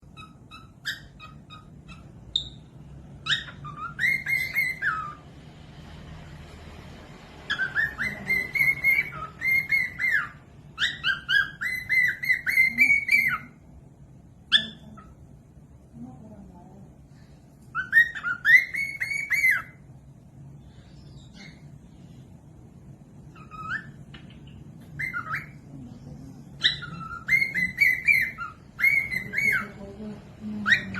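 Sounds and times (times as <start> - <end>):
cockatiel whistling: 0.0 - 5.2, 7.5 - 13.6, 17.7 - 19.9, 23.3 - 25.6, 26.6 - 29.8, 30.6 - 30.9.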